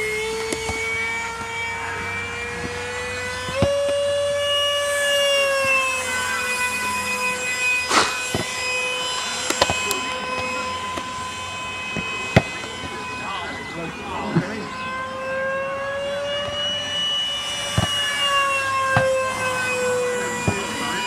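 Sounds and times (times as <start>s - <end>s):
model plane motor whine: 0.0s - 21.0s.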